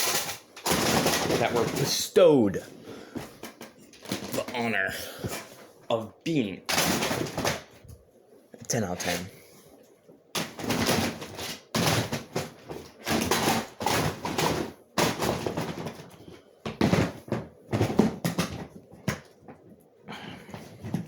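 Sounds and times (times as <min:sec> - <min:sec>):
objects knocking: 0:00.0 - 0:02.0, 0:10.4 - 0:19.7.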